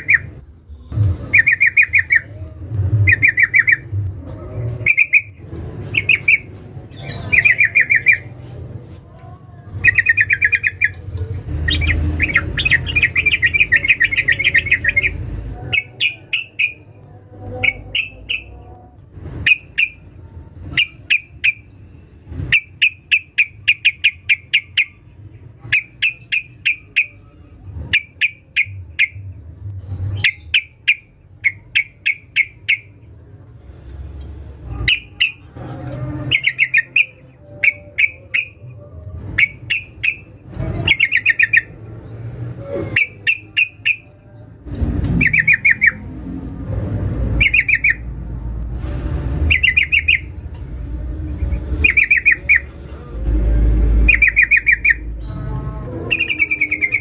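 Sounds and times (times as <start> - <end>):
bird chirping rapidly: 0.0 - 0.4, 1.2 - 4.0, 4.8 - 8.3, 9.8 - 16.9, 17.6 - 18.6, 19.4 - 25.0, 25.7 - 27.3, 27.9 - 29.3, 30.0 - 33.0, 34.8 - 35.5, 36.3 - 38.6, 39.4 - 41.8, 43.0 - 44.2, 45.2 - 46.0, 47.3 - 48.1, 49.5 - 50.4, 51.4 - 52.7, 54.0 - 55.5, 56.1 - 57.0.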